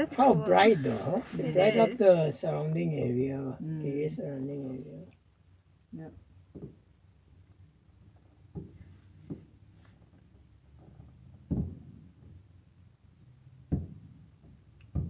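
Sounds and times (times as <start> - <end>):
distant fireworks booming: 11.0 - 12.4, 13.6 - 15.0.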